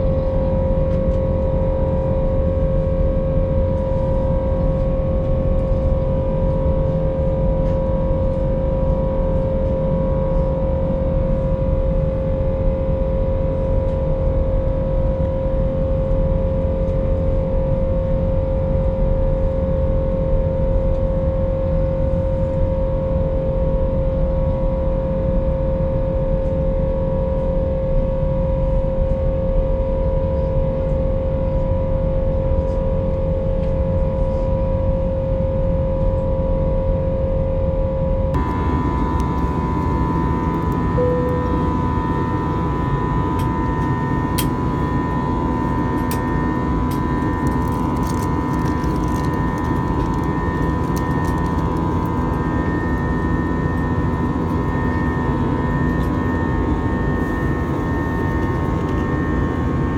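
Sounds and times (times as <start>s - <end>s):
airliner engine and air rush: 38.4s - 59.9s
steady mid-pitched tone: 38.4s - 59.9s.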